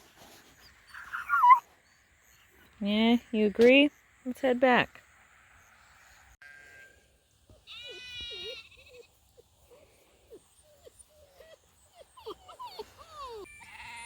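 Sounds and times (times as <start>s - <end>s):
sheep bleating: 7.7s - 9.0s
faint squeaky calls: 10.6s - 14.0s.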